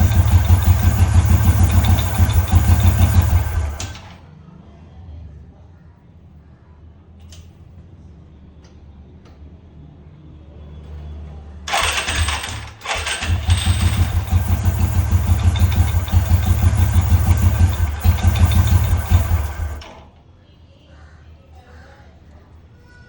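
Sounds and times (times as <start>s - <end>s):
motorcycle engine running: 0.0s - 4.1s, 11.7s - 19.8s
engine starter cranking: 0.0s - 4.2s, 11.7s - 20.0s.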